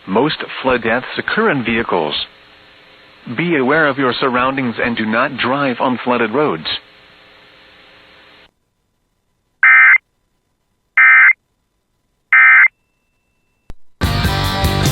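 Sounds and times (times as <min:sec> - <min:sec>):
warbling digital data tones: 0:09.6 - 0:10.0, 0:11.0 - 0:11.4, 0:12.4 - 0:12.8.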